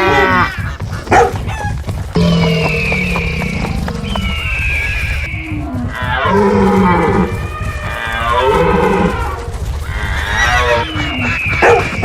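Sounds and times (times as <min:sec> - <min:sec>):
cow mooing: 0:02.2 - 0:04.5
steady low rumble: 0:02.2 - 0:05.8.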